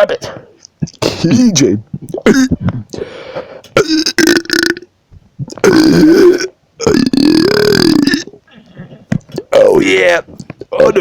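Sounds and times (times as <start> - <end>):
man talking: 0.0 - 1.9, 9.5 - 11.0
man burping: 2.1 - 2.6, 3.8 - 8.6.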